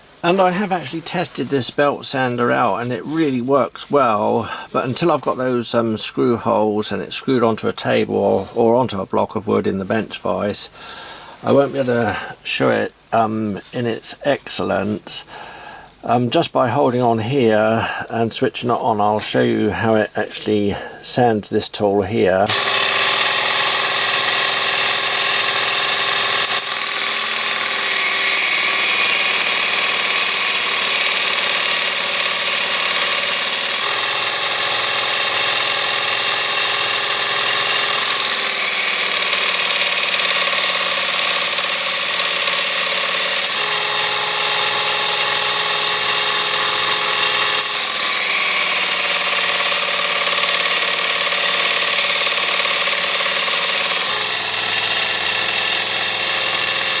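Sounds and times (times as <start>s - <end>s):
belt sander motor whining: 22.4s - 57.0s.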